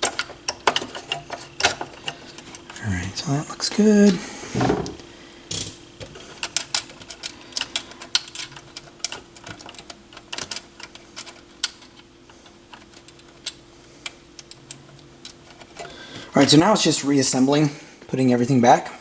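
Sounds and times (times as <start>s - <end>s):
small clicks and taps of parts: 0.0s - 2.8s, 5.5s - 15.9s
faint steady hum: 0.0s - 19.0s.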